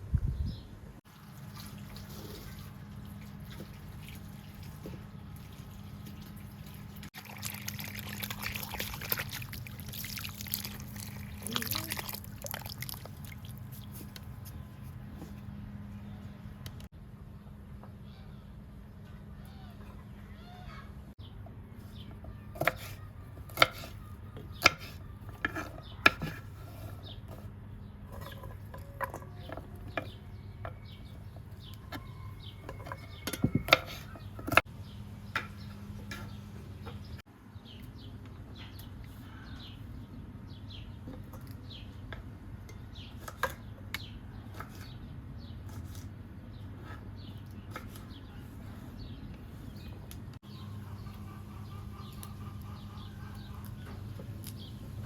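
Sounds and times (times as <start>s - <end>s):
small birds chirping: 7.6s - 16.8s, 17.4s - 55.0s
chickens clucking: 50.5s - 54.3s.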